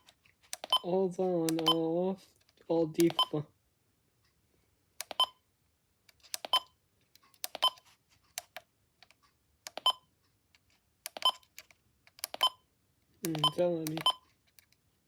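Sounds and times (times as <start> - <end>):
short electronic key beeps: 13.3 - 14.2.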